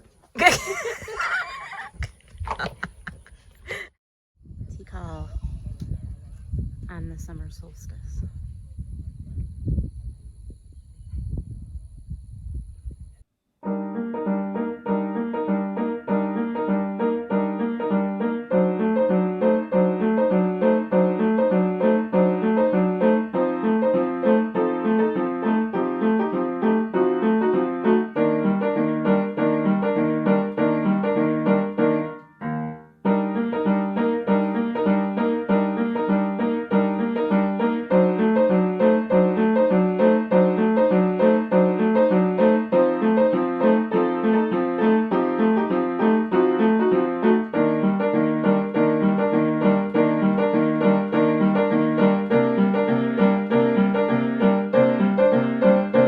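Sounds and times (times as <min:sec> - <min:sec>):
keyboard playing repeating pattern: 0:33.1 - 0:56.0.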